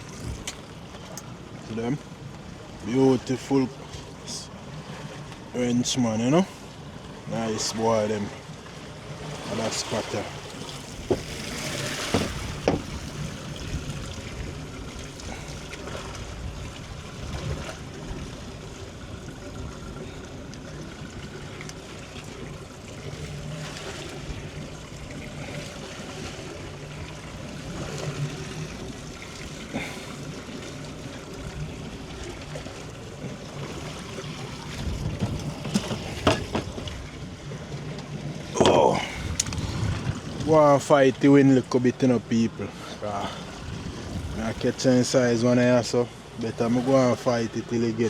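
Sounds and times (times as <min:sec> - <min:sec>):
water sloshing against boat hull: 0:00.0 - 0:48.0
light knocks: 0:11.0 - 0:11.3, 0:12.1 - 0:12.9.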